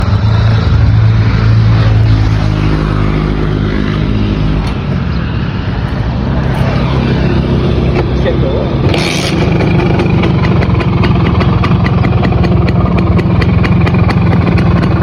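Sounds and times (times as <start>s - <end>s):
two-stroke engine running: 6.7s - 15.0s.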